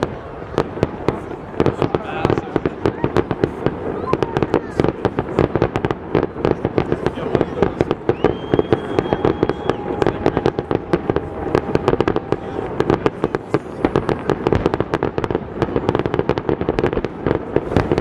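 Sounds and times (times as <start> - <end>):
fireworks crackling bangs: 0.0 - 18.0
firework whistle: 7.2 - 14.3.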